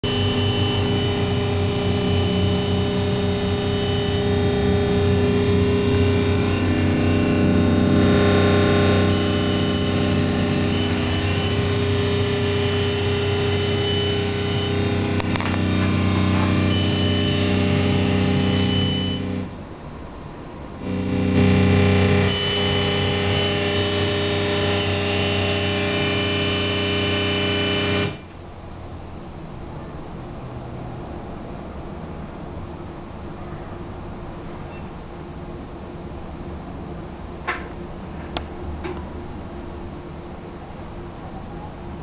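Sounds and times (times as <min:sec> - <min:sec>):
harsh buzzing drone from speakers: 0:00.0 - 0:28.6.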